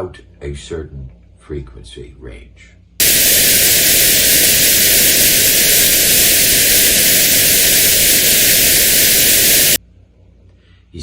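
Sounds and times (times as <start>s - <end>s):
loud steady white noise hiss: 3.0s - 9.8s.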